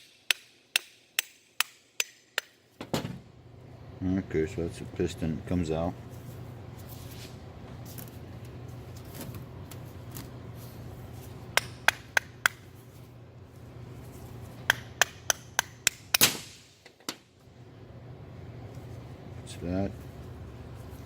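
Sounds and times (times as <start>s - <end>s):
taps and knocks on metal parts: 0.0s - 3.2s, 11.6s - 12.7s, 14.6s - 17.2s.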